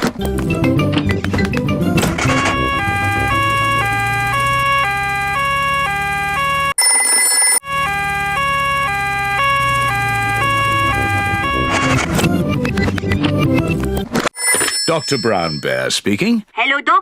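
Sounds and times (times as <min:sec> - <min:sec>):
two-tone emergency siren: 0:02.1 - 0:12.2.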